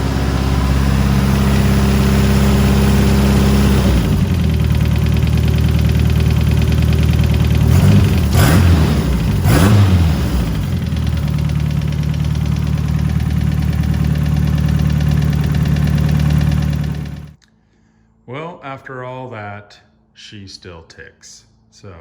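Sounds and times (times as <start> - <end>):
car engine idling and revving: 0.0 - 17.4
engine lifter tick: 10.7 - 17.4.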